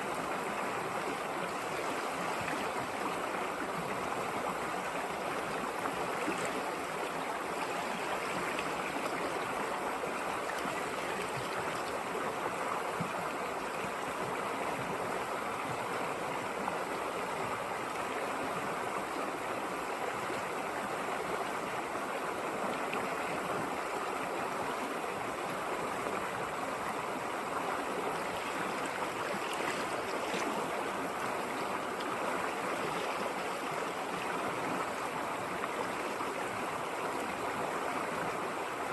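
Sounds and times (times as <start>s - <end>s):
stream flowing over rocks: 0.0s - 38.9s.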